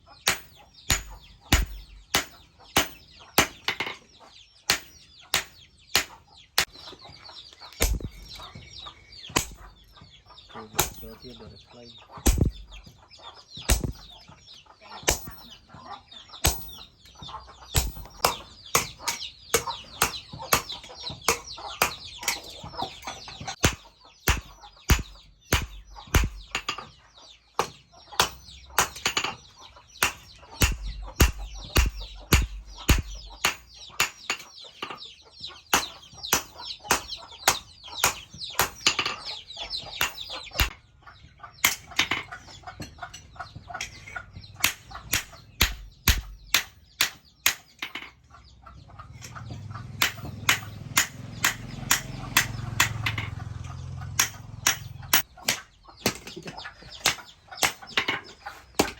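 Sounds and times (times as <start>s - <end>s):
hammer striking steel on anvil: 0.2s - 4.0s, 4.7s - 6.8s, 7.8s - 8.4s, 9.3s - 9.8s, 10.8s - 11.3s, 12.2s - 12.8s, 13.7s - 14.1s, 15.1s - 15.6s, 16.4s - 16.9s, 17.8s - 26.9s, 27.6s - 29.4s, 30.0s - 35.0s, 35.7s - 40.8s, 41.6s - 42.3s, 44.6s - 48.1s, 50.0s - 53.4s, 54.0s - 56.3s, 57.0s - 58.2s.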